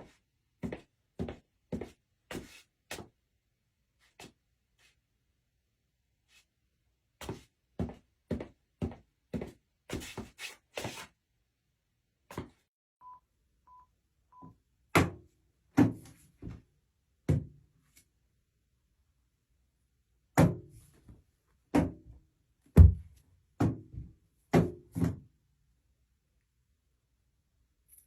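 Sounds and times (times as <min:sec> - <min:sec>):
short beeps: 0:13.0 - 0:14.5.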